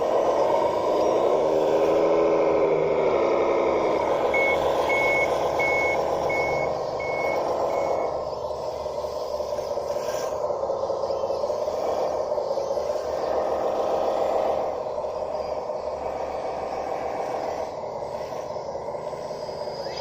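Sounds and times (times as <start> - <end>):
model bulldozer engine running: 0.0 - 20.0
high reversing beeps: 3.7 - 10.4.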